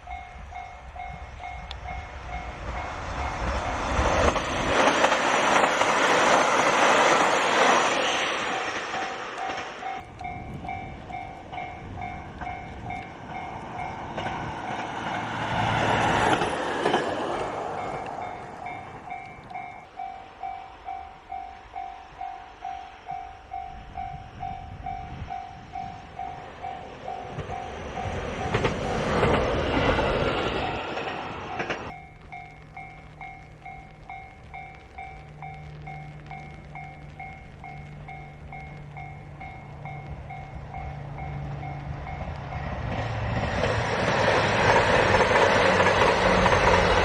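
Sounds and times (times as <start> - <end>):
train passing: 0.0 - 47.0.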